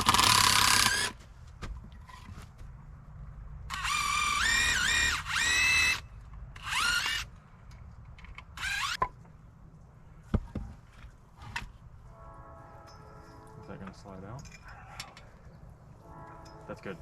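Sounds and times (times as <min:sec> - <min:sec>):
power drill whining: 0:00.0 - 0:01.2, 0:03.7 - 0:06.0, 0:06.6 - 0:07.3, 0:08.6 - 0:09.0.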